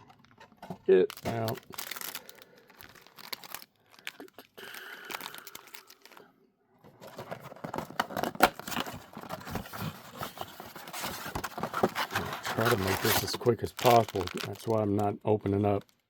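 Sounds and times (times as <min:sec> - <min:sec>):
card packs crinkling: 0:00.0 - 0:06.3, 0:06.9 - 0:16.0
cardboard box tearing: 0:07.2 - 0:14.4.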